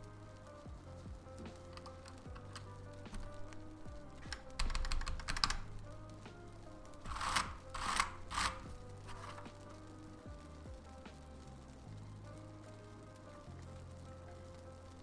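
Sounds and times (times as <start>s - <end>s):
background music: 0.0s - 15.0s
mechanical keyboard typing: 1.6s - 6.1s, 6.8s - 9.7s.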